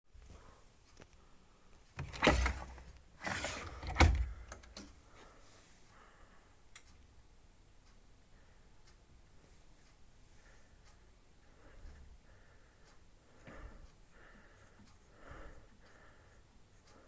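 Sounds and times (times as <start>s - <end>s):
latch scraping and clicking: 2.0s - 4.9s
faint clicks: 6.7s - 7.0s.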